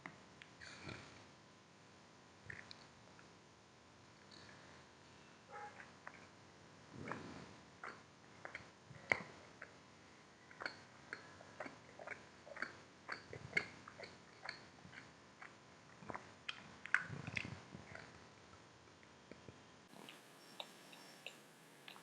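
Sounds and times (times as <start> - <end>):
chewing mouth clicks: 7.0 - 9.8, 10.5 - 18.2, 20.0 - 22.0.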